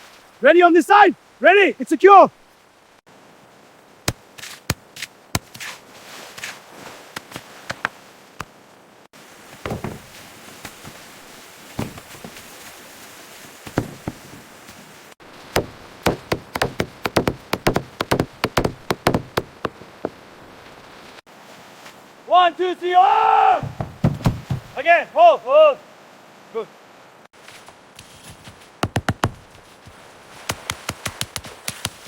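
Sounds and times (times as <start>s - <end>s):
wooden knocks and taps: 9.6s - 10.1s, 15.6s - 20.2s, 23.6s - 24.8s, 28.8s - 29.4s.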